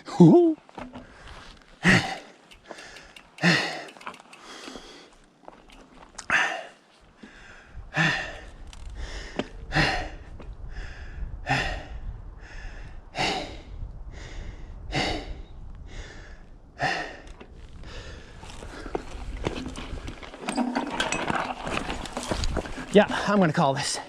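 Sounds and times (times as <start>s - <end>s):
person breathing hard: 1.0s - 5.2s, 6.2s - 19.4s.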